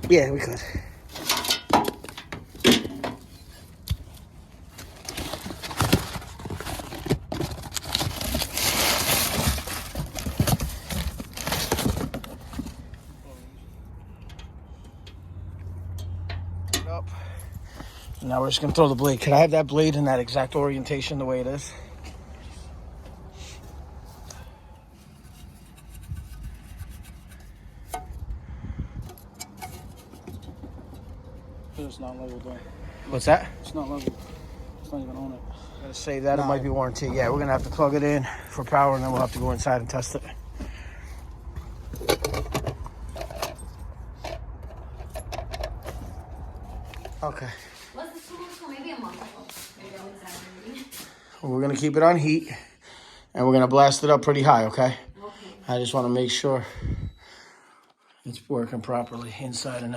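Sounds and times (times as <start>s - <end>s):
rustling and scraping of parts: 0.0s - 51.2s
fan blade scraping on shaft: 24.8s - 28.2s.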